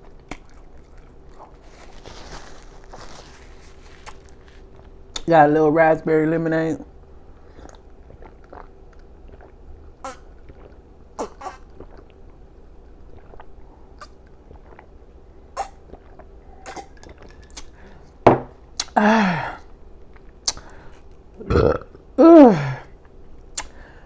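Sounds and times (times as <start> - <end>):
quiet sips: 0.3 - 4.8
short burp: 21.4 - 22.0.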